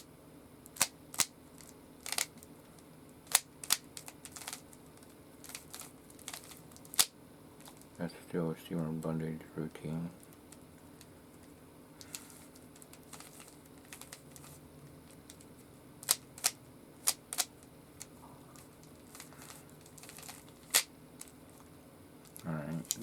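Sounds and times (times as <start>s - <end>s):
faint steady hum: 0.0s - 23.0s
plastic puzzle cube clacks: 3.3s - 4.6s, 12.1s - 14.5s, 15.1s - 18.1s.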